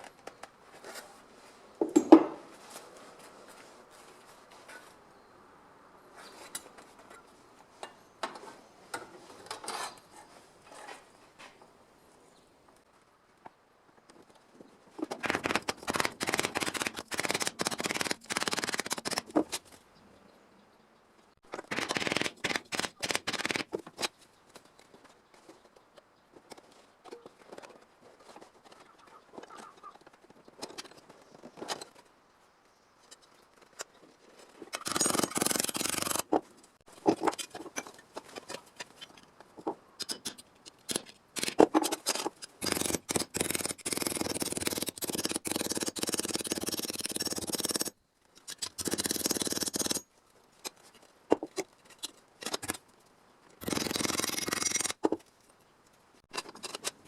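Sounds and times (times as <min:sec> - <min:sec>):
metal clicks and scrapes: 0:33.1 - 0:57.0.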